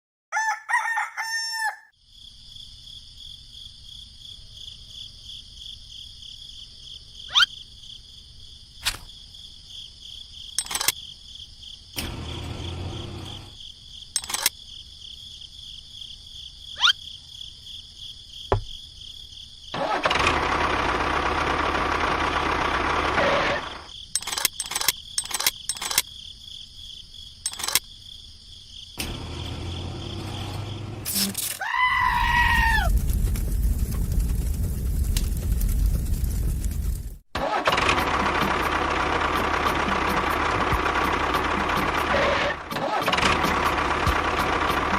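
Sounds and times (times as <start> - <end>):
insects droning: 0.4 - 37.1
rough mechanical noise: 10.6 - 10.9, 12.0 - 13.6, 19.8 - 26.0, 29.0 - 44.9
sharp clicks: 10.6 - 11.0, 14.2 - 14.6, 24.2 - 26.1, 27.5 - 27.8.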